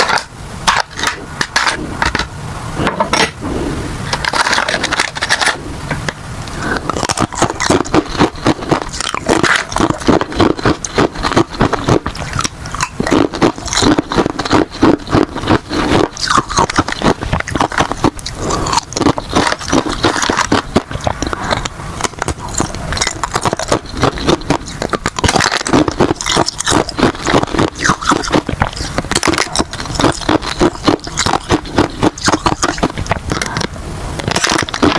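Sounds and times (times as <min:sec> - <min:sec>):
ice crunching being chewed: 0:06.6 - 0:34.9.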